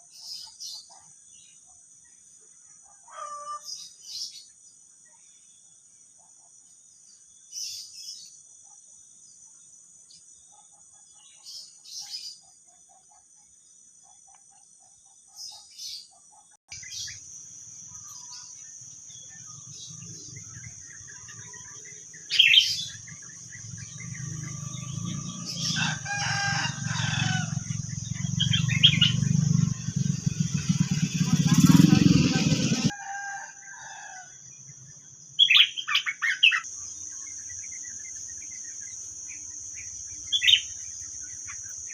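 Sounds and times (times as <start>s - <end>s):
rooster crowing: 3.1s - 3.7s, 23.8s - 29.1s, 31.6s - 34.4s
bird calls: 14.0s - 32.9s, 35.4s - 41.9s
low engine rumble: 19.0s - 32.9s
high-pitched drone: 19.4s - 32.9s.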